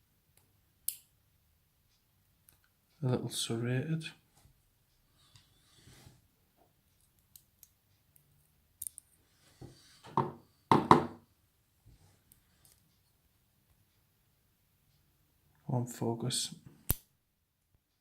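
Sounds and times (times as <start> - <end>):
small metal clicks and taps: 7.0 - 9.1.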